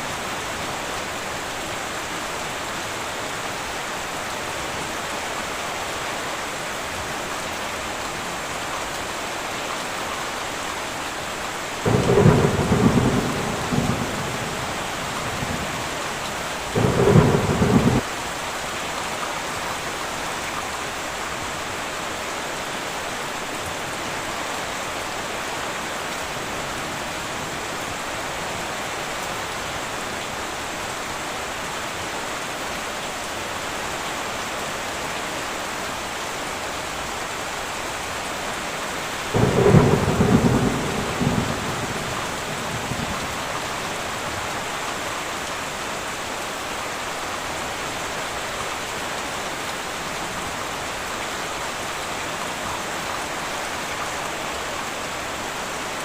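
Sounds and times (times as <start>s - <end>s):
heavy rain on a tin roof: 0.0s - 56.0s
thunder claps: 11.9s - 15.9s, 16.7s - 18.0s.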